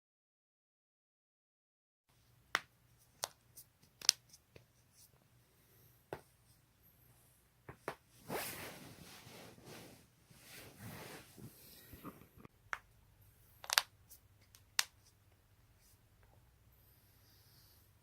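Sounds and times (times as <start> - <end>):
soft rustling: 8.1 - 12.5.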